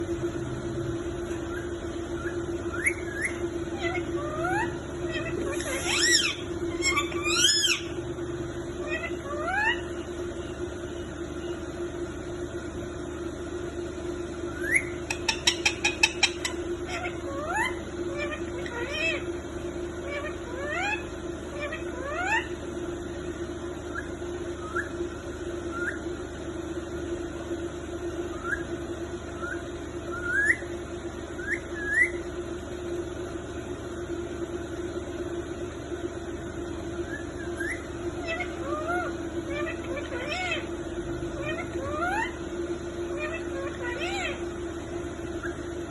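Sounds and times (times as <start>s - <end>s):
steady low hum: 0.0s - 45.9s
parrot squeaking: 1.4s - 8.0s, 8.8s - 10.0s, 14.6s - 19.3s, 20.0s - 22.6s, 37.2s - 40.7s, 41.4s - 42.4s, 43.1s - 44.4s.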